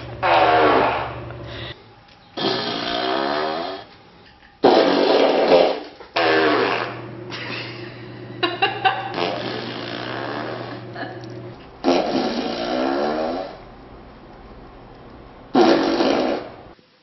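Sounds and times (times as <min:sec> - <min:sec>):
steady low hum: 0:00.0 - 0:16.8
fart machine farting sounds: 0:00.1 - 0:01.4, 0:02.4 - 0:03.9, 0:04.6 - 0:07.1, 0:09.1 - 0:13.6, 0:15.5 - 0:16.8.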